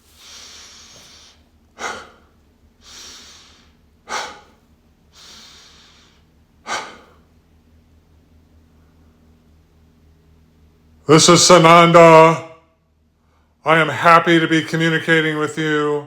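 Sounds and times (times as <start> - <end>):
forceful exhale: 0.0 - 7.3
person inhaling deeply: 0.0 - 7.3.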